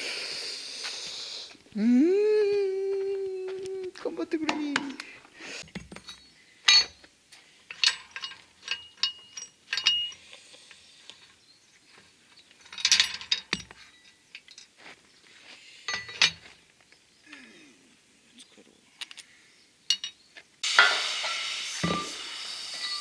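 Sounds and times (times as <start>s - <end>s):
metal clinks and knocks: 5.6s - 7.1s, 7.7s - 10.3s, 11.2s - 14.8s, 15.9s - 16.6s, 19.9s - 20.2s.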